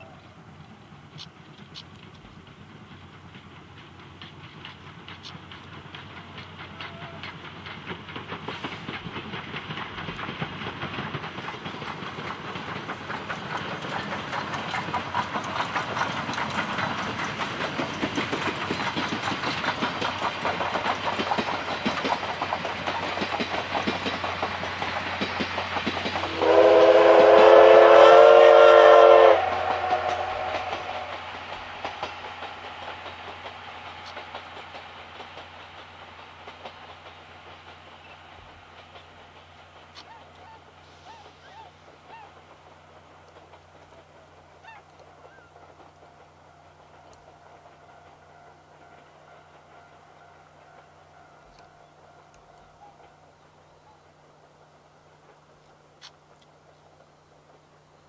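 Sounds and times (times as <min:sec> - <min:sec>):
steam locomotive exhaust chuffing: 0:00.0 - 0:58.0
steam whistle blast: 0:26.3 - 0:31.1.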